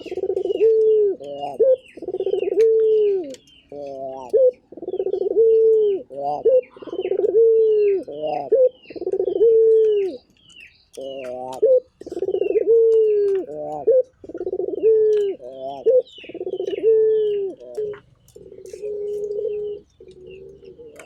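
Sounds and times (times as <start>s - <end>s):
dove cooing: 0.0s - 10.3s, 10.9s - 21.0s
small birds chirping: 0.0s - 21.0s.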